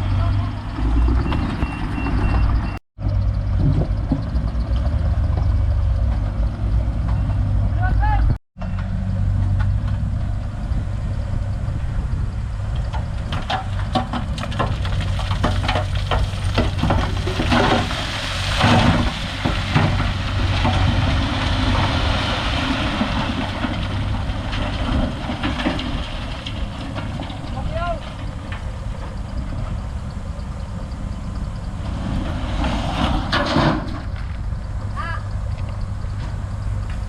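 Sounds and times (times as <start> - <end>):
metal clanks and knocks: 12.7 - 18.0, 32.5 - 34.4.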